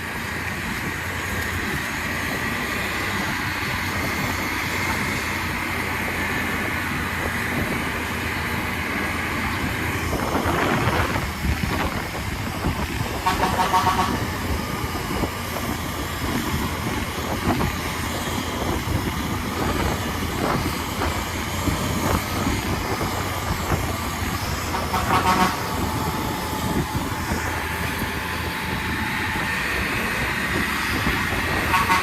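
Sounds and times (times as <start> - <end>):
bus engine rumble: 0.0 - 32.0
road noise: 0.0 - 32.0
multi-tone horn toots: 13.0 - 14.4, 24.6 - 26.9, 31.5 - 32.0.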